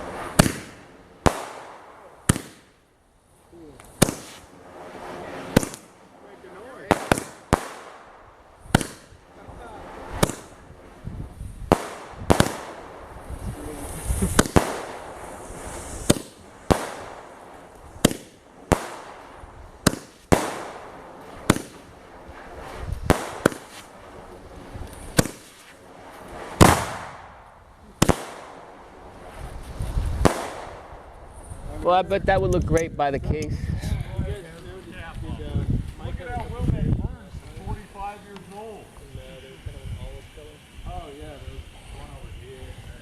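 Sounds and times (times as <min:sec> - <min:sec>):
fireworks shots firing: 0:00.0 - 0:02.8, 0:03.7 - 0:31.7
fireworks hiss: 0:00.0 - 0:43.0.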